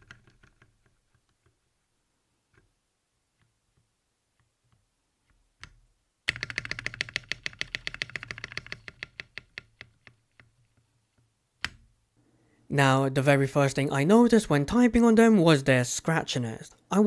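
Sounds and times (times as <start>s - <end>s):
typing on mechanical keyboard: 0.0s - 1.4s, 5.6s - 10.6s.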